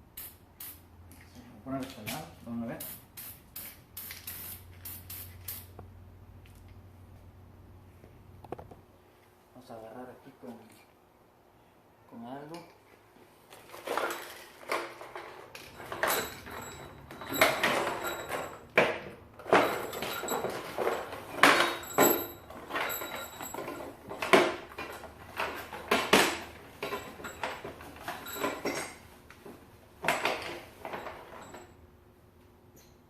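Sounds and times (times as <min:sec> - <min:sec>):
metal parts and tools clinking: 0:13.5 - 0:29.2, 0:30.0 - 0:31.8.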